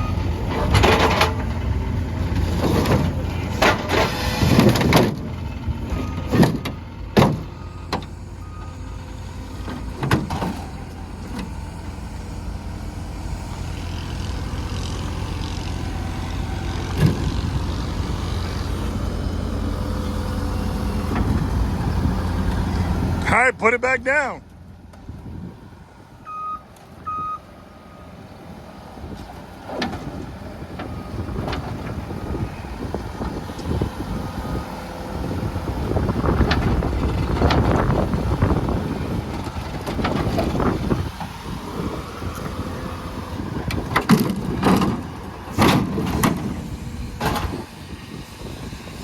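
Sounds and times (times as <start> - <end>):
loader engine revving: 0.0 - 49.0
backup alarm beeps: 26.2 - 28.1.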